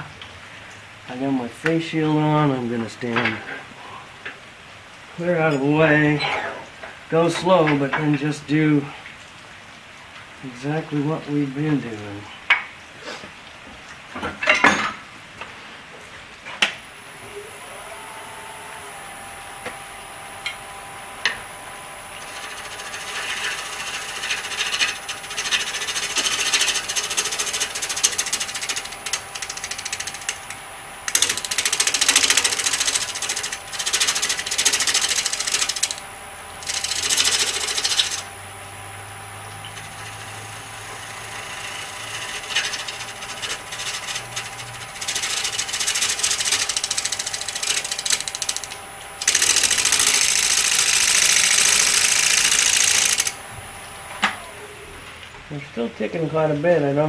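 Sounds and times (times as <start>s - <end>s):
lathe motor humming: 16.8s - 57.0s
turning tool scraping wood: 21.2s - 53.5s
tool ticking on wood: 22.2s - 36.0s, 36.6s - 38.3s, 39.7s - 53.4s.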